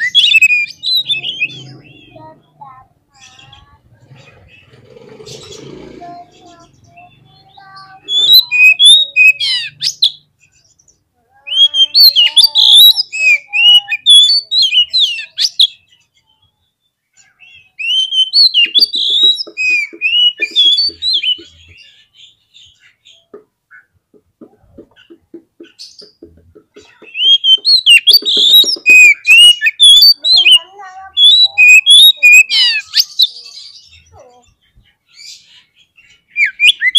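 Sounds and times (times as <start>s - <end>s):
bird singing whistled phrases: 0.0s - 2.2s, 7.6s - 10.2s, 11.5s - 15.8s, 17.4s - 21.4s, 27.1s - 34.1s, 36.3s - 36.9s.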